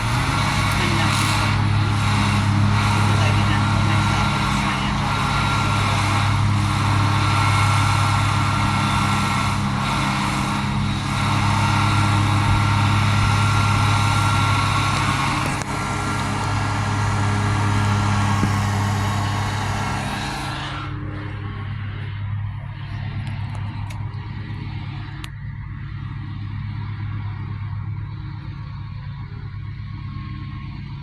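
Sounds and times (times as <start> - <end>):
mechanical drone with low hum: 0.0 - 31.0.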